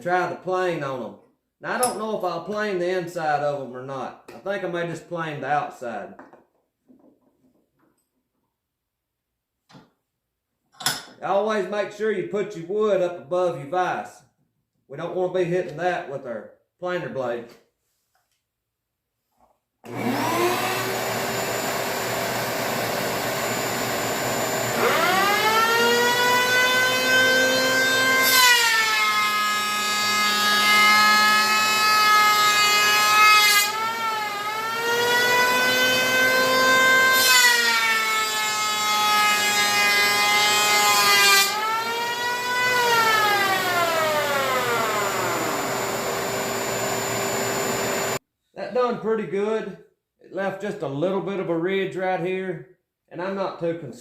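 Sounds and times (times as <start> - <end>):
electric hand planer planing boards: 19.9 - 48.2.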